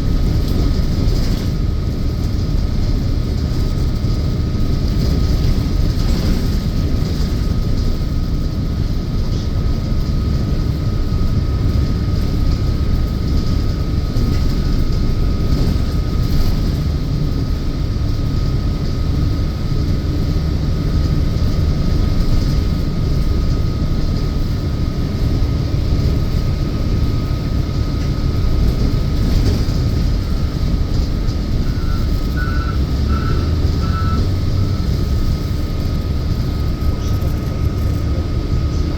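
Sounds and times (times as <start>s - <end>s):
bus engine and road rumble: 0.0s - 38.9s
short beeps: 31.7s - 34.9s.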